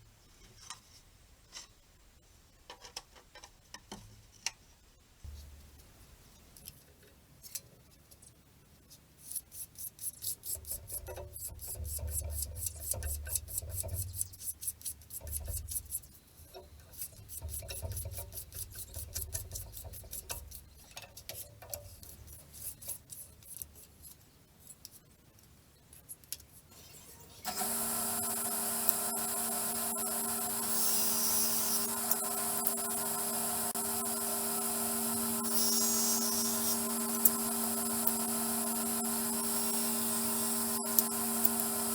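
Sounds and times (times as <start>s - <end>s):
motor humming: 26.8s - 41.9s.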